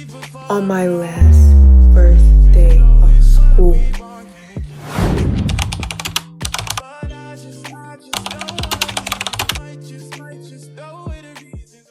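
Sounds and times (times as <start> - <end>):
hip hop music: 1.2 - 4.0.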